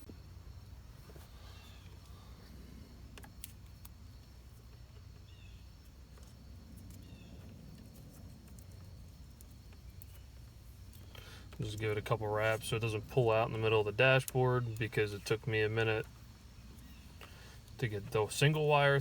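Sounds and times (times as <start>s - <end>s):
low steady hum: 0.0s - 19.0s.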